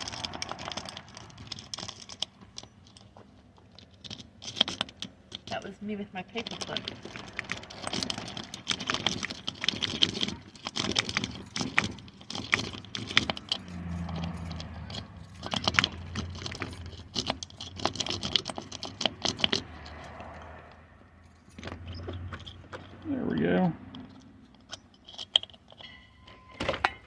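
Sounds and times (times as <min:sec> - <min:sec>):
lock picks clicking in lock: 0:00.0 - 0:05.6, 0:06.4 - 0:20.8, 0:23.8 - 0:27.0.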